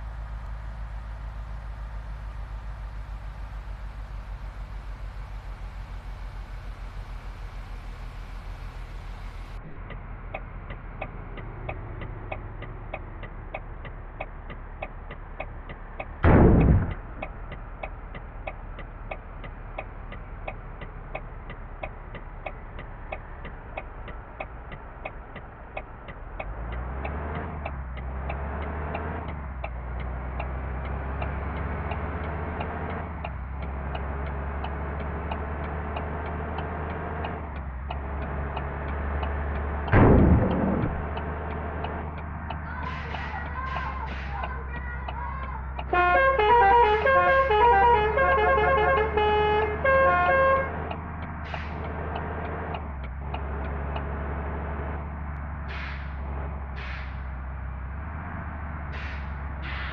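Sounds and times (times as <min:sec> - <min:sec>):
bus engine drone: 0:00.0 - 0:59.9
bus turn signal clicking: 0:41.0 - 0:45.9.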